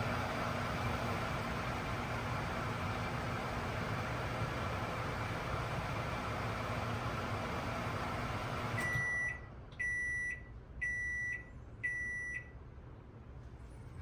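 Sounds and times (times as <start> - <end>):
microwave oven hum and fan: 0.0 - 14.0
microwave beeps: 8.6 - 12.6.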